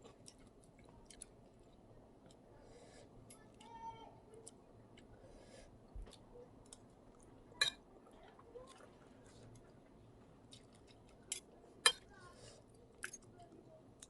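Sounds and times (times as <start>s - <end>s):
person chewing food: 0.0s - 2.4s, 10.4s - 11.5s.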